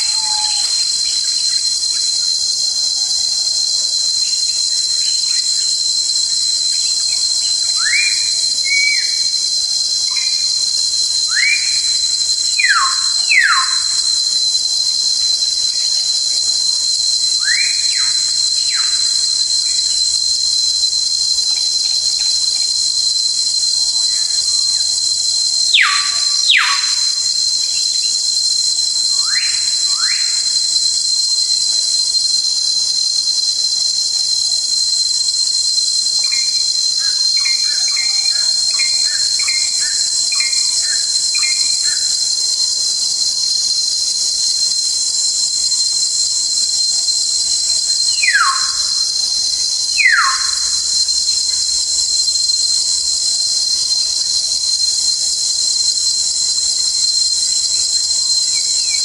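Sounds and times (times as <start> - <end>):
bird whistled calls: 0.0 - 0.7, 25.8 - 27.1, 48.2 - 48.9, 50.0 - 50.6
shrill insect chorus: 0.0 - 59.0.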